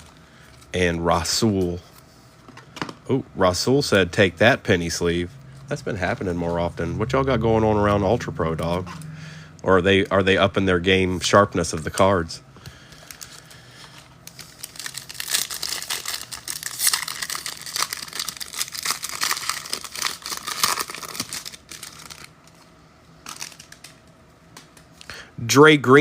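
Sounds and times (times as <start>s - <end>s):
foil wrapper tearing and crinkling: 13.0s - 22.6s, 23.2s - 24.0s.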